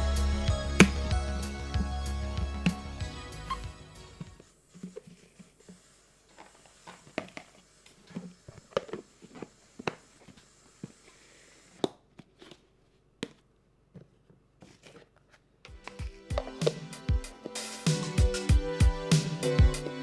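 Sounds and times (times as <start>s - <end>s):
room hiss: 15.9s - 20.0s.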